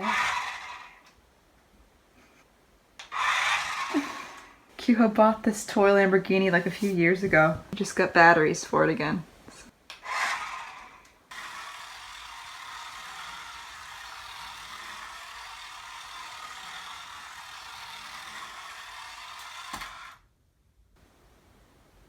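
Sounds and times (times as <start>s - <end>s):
toy car motor whirring: 0.0s - 1.2s, 3.0s - 4.6s, 9.9s - 20.3s.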